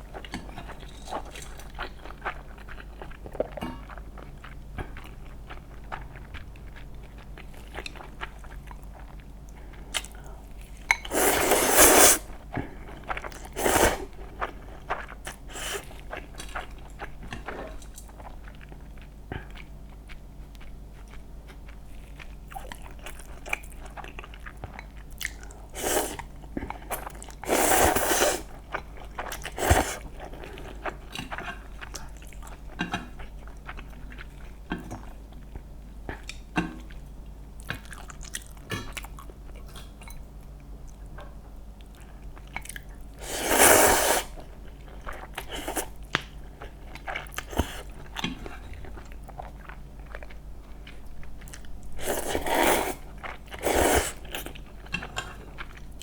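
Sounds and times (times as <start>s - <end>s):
chewing: 0.0s - 56.0s.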